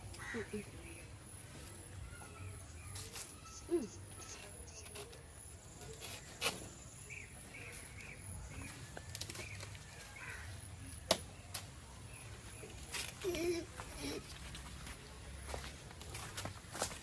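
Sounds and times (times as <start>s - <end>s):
faint bird chirps: 0.2s - 10.6s.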